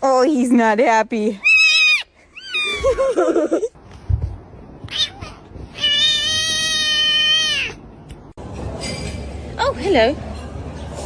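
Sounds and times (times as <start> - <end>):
cat meowing: 4.9 - 7.8.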